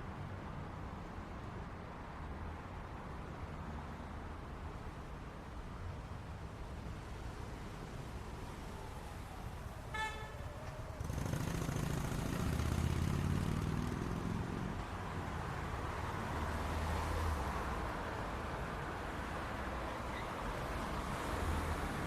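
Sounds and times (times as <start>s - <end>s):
street traffic noise: 0.0s - 22.0s
car horn toot: 9.9s - 10.4s
vehicle engine rumble passing: 10.5s - 17.2s.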